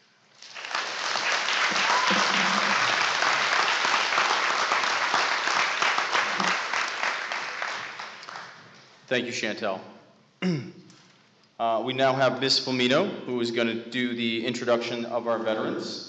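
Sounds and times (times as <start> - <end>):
audience applause: 0.4 - 8.6.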